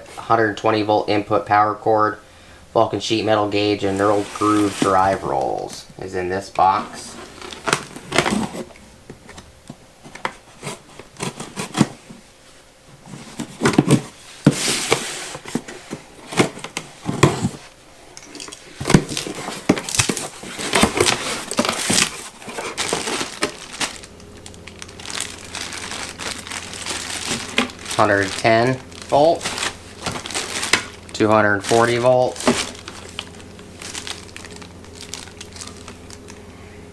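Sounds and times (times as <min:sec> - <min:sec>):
packaging crinkling and tearing: 0:06.6 - 0:08.8, 0:13.3 - 0:36.6.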